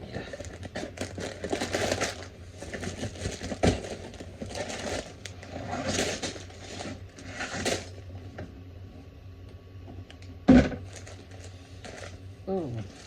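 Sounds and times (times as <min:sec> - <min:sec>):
plastic packaging crinkling: 0:00.1 - 0:08.0, 0:10.8 - 0:12.2, 0:12.8 - 0:13.0.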